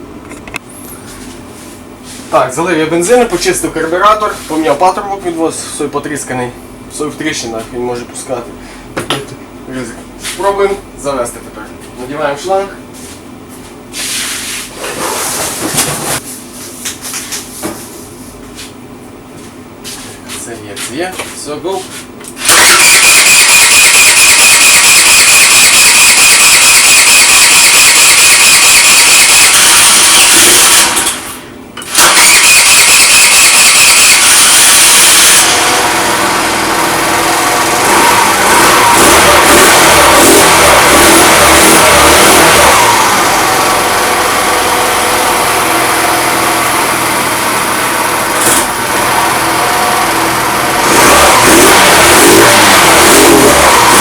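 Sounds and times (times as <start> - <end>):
scooter engine running: 22.4 - 31.2, 31.9 - 54.0
electric starter cranking engine: 22.4 - 54.0.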